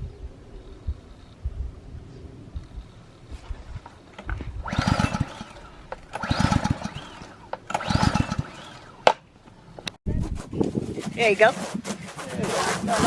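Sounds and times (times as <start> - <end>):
small gas engine cranking: 4.1 - 10.0, 11.0 - 13.0.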